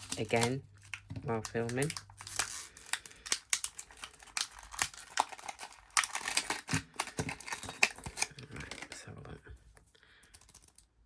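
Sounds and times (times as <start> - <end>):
sharp clicks snips and crinkles: 0.0 - 6.3
knife cutting packaging: 0.0 - 7.5.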